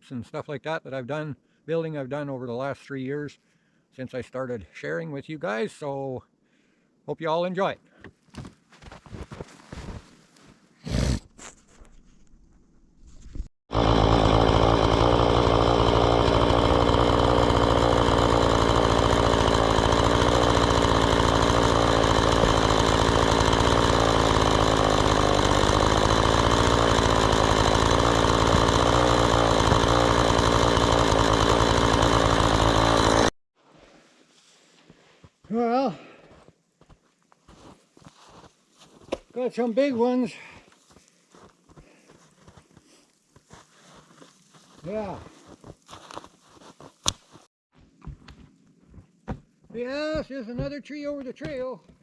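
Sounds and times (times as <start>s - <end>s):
small engine running loudly: 13.7s - 33.3s.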